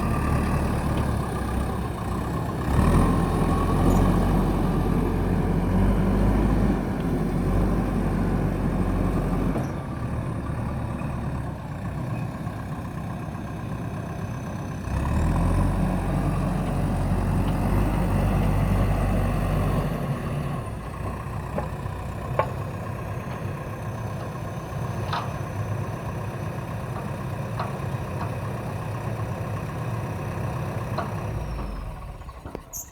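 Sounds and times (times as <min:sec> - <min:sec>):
diesel engine revving: 0:00.0 - 0:11.9, 0:13.9 - 0:23.7.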